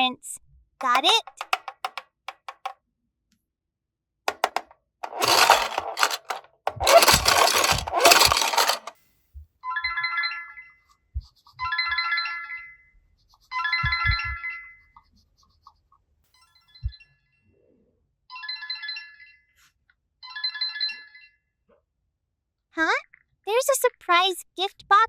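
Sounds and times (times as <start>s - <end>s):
loud rustling and shaking: 4.3s - 8.9s.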